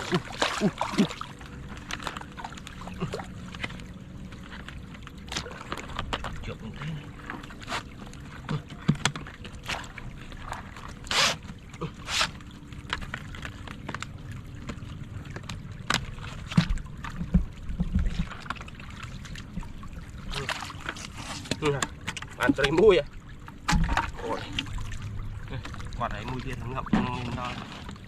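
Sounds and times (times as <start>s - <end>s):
muddy water splashing: 0.0s - 28.0s.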